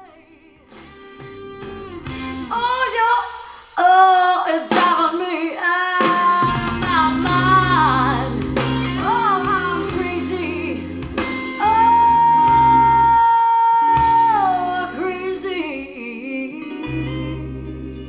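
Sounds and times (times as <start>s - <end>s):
bass line: 0.8s - 2.6s, 6.4s - 13.2s, 14.0s - 15.8s, 16.8s - 18.0s
high female voice singing: 2.5s - 11.0s, 11.6s - 18.0s.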